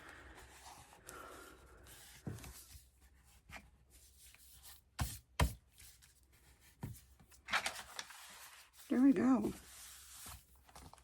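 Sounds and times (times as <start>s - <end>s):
paper and card rustling: 5.8s - 11.0s.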